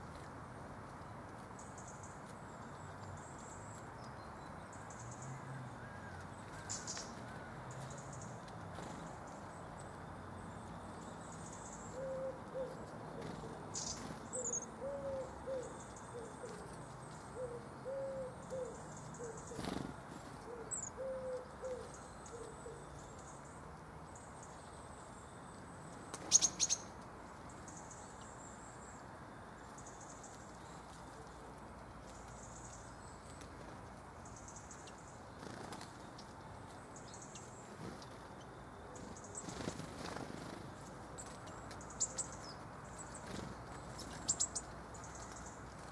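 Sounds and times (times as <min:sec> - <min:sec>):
small birds calling: 0:06.1 - 0:23.6, 0:26.0 - 0:29.0, 0:29.7 - 0:45.8
pigeon cooing: 0:14.8 - 0:16.7, 0:17.4 - 0:18.8.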